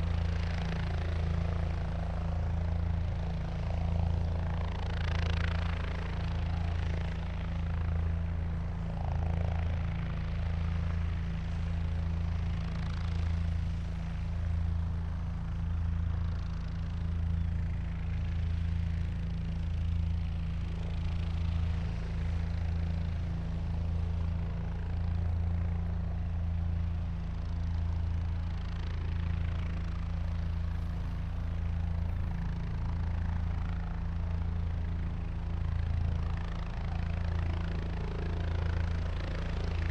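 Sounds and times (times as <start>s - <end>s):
helicopter rotor throbbing: 0.0s - 39.9s.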